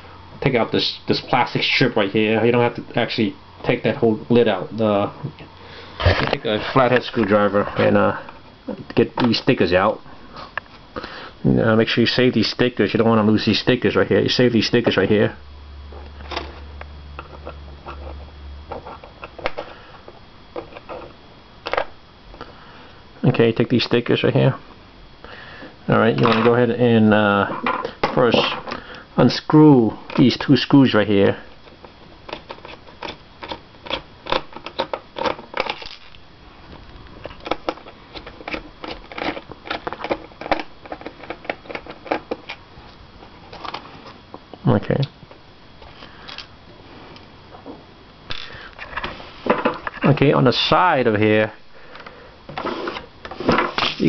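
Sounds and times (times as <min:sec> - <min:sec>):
screwdriver clicking and scraping plastic: 0:32.2 - 0:36.0, 0:37.2 - 0:42.6.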